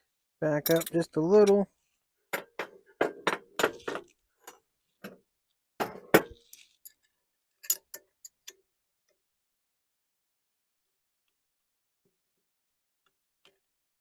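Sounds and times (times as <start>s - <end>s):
light metallic clicks and clinks: 0.6s - 1.6s.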